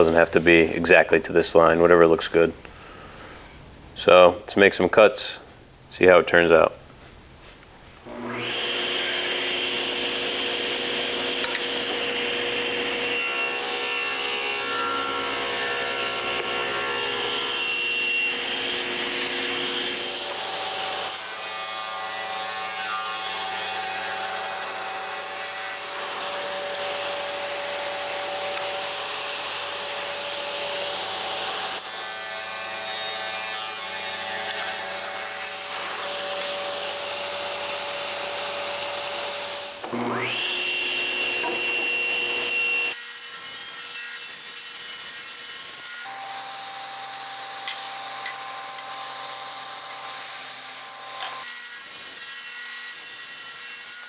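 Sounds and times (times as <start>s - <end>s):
table saw ripping wood: 8.0s - 54.0s.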